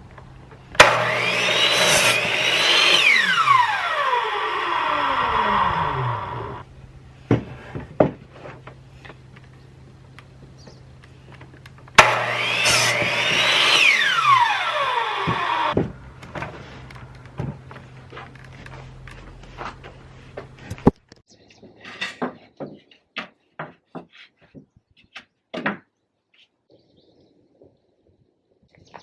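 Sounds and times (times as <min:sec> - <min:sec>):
cordless drill motor whining: 0:02.2 - 0:06.6, 0:12.4 - 0:15.8.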